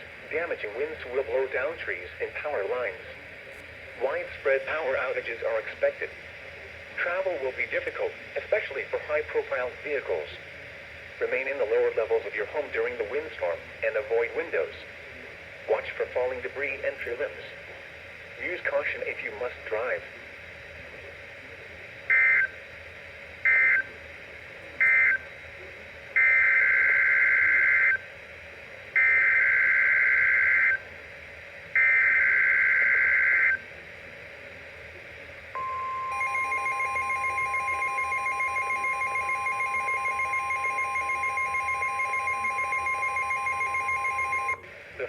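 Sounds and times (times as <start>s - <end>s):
steady warning alarm tone: 22.0s - 24.0s, 24.7s - 25.5s, 26.1s - 30.9s, 31.6s - 33.7s, 35.5s - 44.7s
alert data bursts: 35.6s - 44.6s
rapid pulsing alert beeps: 35.6s - 44.6s.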